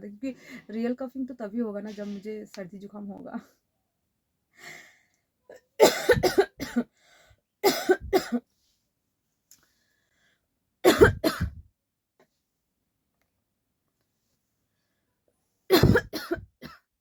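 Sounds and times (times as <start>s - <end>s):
person coughing: 5.5s - 6.9s, 7.6s - 8.4s, 10.9s - 11.6s, 15.7s - 16.8s.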